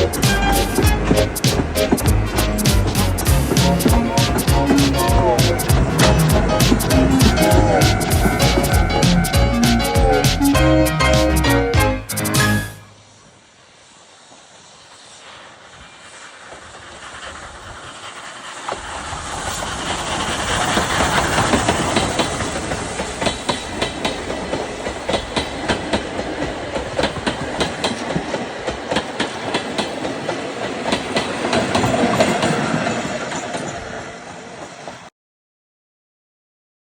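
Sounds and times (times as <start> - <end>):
steam hiss: 0.0 - 10.4, 12.1 - 35.1
wheels clicking over rail joints: 0.0 - 10.4, 16.4 - 35.1
steam train passing: 0.0 - 35.1.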